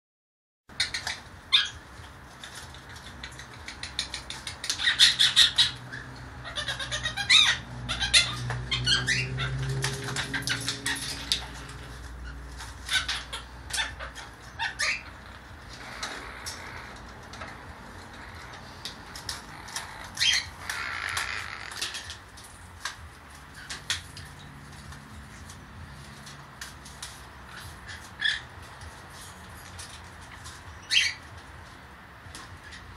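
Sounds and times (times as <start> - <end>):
parrot squawks and chirps: 0.7 - 1.9, 2.9 - 22.2, 27.5 - 28.6, 29.7 - 31.4.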